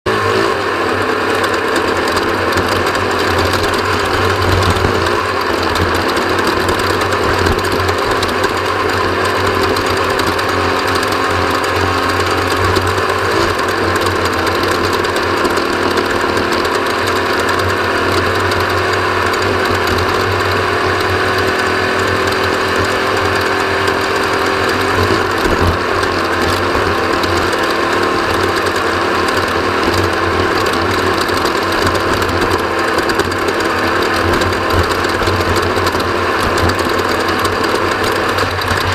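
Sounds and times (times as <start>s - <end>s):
race vehicle engine running hard: 0.1s - 38.9s
mechanical rattle: 1.4s - 38.9s.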